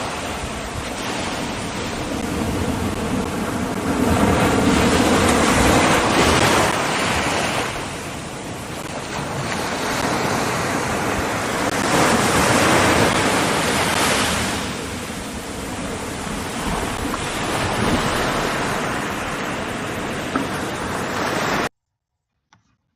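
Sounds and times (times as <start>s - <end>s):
surf washing on shore: 0.0s - 21.7s
wind on microphone: 0.0s - 21.7s.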